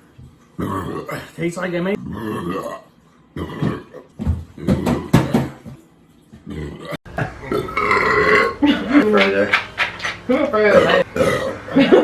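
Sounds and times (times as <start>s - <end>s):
man belching: 0.6s - 1.4s, 2.0s - 4.0s, 6.5s - 8.6s.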